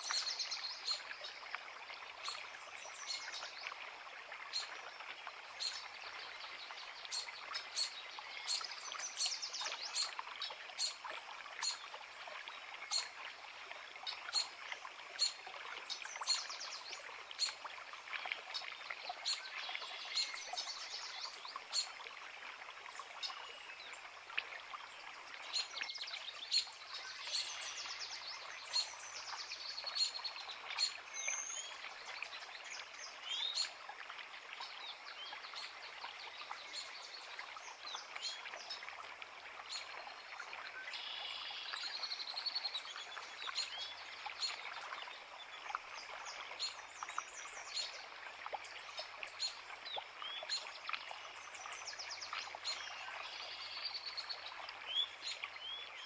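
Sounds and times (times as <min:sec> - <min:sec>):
creek running over rocks: 0:00.0 - 0:56.0
songbirds singing and chirping: 0:39.7 - 0:56.0.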